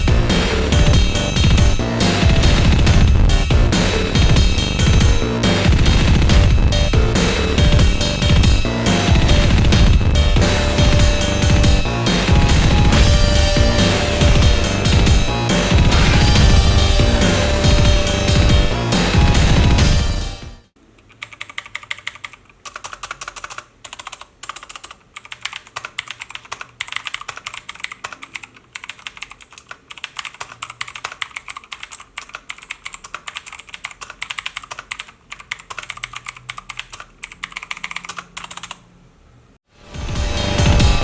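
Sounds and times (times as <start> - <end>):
clicky keyboard typing: 21.0 - 38.8.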